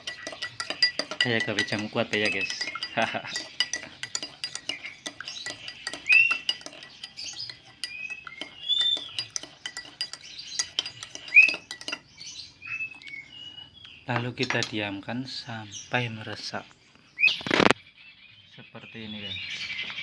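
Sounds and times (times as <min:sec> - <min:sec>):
spoon clinking in glass: 0:00.0 - 0:12.1, 0:14.1 - 0:14.8
birds chirping: 0:00.0 - 0:20.0.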